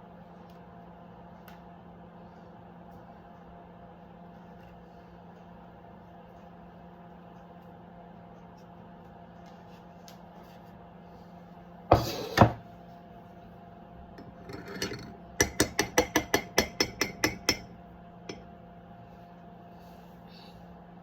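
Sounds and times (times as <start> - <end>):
kitchen appliance humming: 11.9 - 12.7, 13.6 - 19.0.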